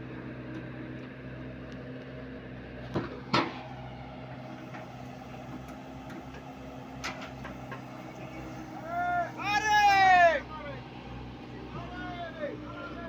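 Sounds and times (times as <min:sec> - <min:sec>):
motor humming: 0:03.2 - 0:12.5.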